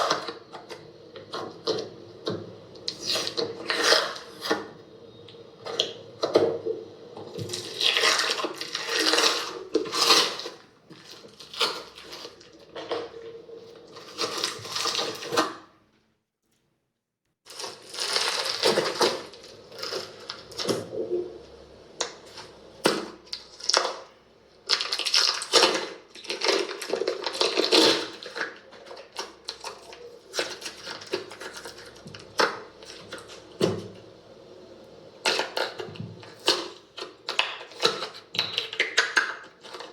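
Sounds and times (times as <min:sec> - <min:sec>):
slime crackling and popping: 0:07.4 - 0:13.0, 0:22.0 - 0:33.5, 0:35.3 - 0:39.9.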